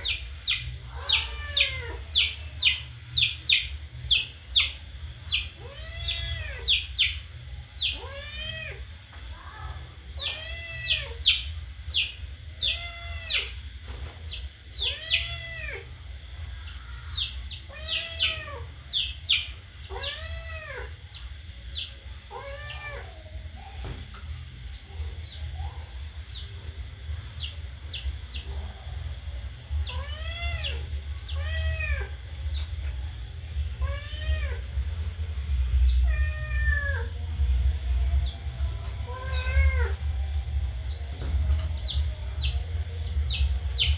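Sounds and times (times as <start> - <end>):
high peeping chirps: 0.0 - 43.9
low steady hum: 0.0 - 43.9
cat meowing: 0.9 - 2.3, 5.6 - 6.8, 7.8 - 8.9, 10.2 - 11.4, 14.8 - 15.9, 17.7 - 21.1, 22.3 - 23.2, 29.8 - 32.2, 33.8 - 34.7, 36.0 - 37.2, 39.1 - 40.0.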